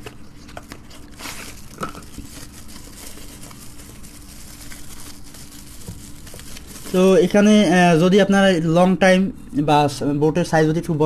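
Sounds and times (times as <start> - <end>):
small parts crinkling and rustling: 0.0 - 7.4
faint steady hum: 0.0 - 11.0.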